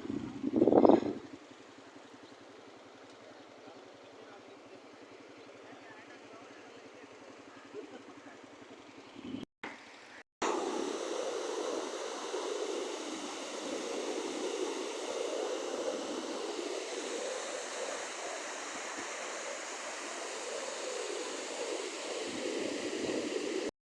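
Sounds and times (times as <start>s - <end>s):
floodwater rushing: 10.4s - 23.7s.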